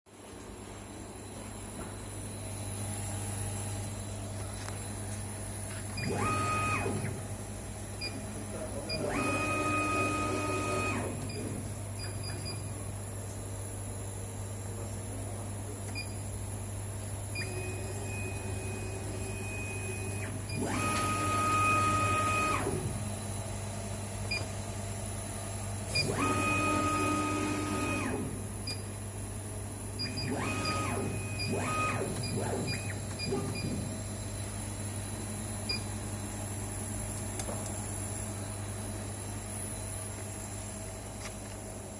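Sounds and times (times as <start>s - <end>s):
machine low hum: 0.1s - 41.9s
stepper motor whine: 5.9s - 7.3s, 8.9s - 12.6s, 17.3s - 23.3s, 25.8s - 28.4s, 30.0s - 34.0s.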